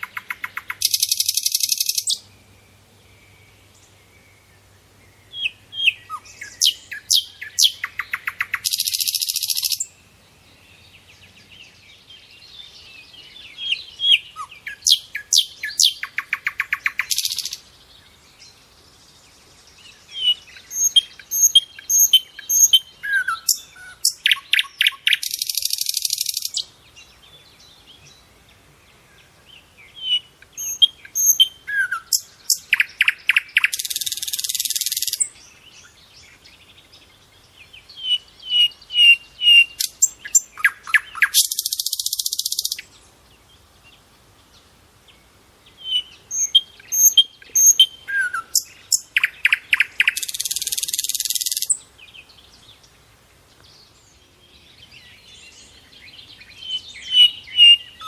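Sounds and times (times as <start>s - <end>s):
rapid buzzy bird trill: 0.0s - 2.2s
songbird chirping and whistling: 0.0s - 10.0s, 11.2s - 17.7s, 19.8s - 27.1s, 29.8s - 37.0s, 37.7s - 43.0s, 45.7s - 52.9s, 53.6s - 58.0s.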